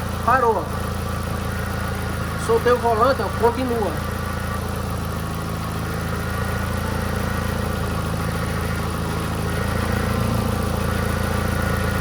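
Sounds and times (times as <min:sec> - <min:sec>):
car engine idling: 0:00.0 - 0:12.0
power steering drone: 0:00.0 - 0:12.0.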